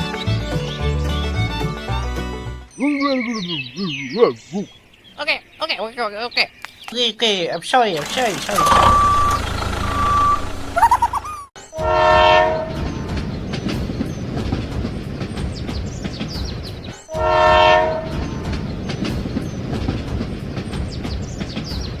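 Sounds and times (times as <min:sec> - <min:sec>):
train rumbling and clacking: 0:08.0 - 0:22.0
train horn blasts: 0:11.7 - 0:13.0, 0:17.1 - 0:18.3.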